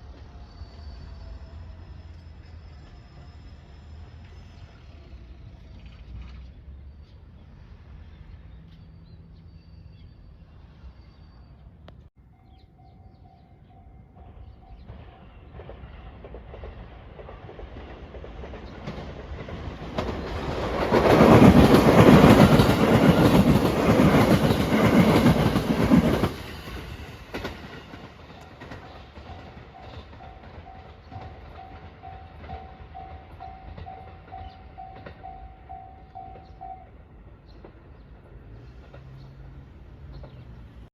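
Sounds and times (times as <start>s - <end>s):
electric train passing: 0.0s - 40.9s
wheels clattering over rail joints: 15.5s - 36.7s
level-crossing alarm dinging: 27.9s - 37.0s.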